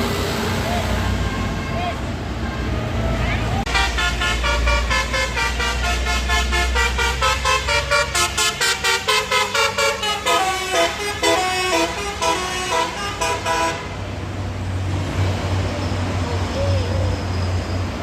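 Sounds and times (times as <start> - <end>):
engine and road noise: 0.0 - 18.0
bus horn playing melody: 3.7 - 14.2.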